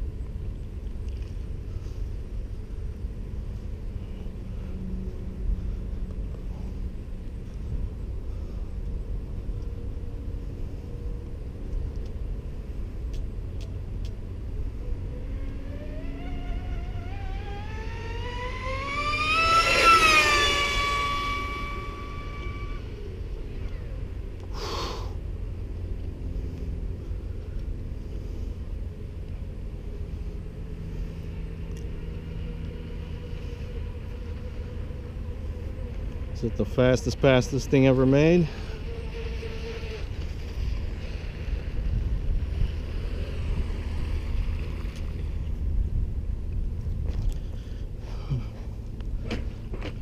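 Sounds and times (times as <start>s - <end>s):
steady low rumble: 0.0s - 50.0s
electric motor whining: 14.8s - 23.8s, 31.0s - 44.6s.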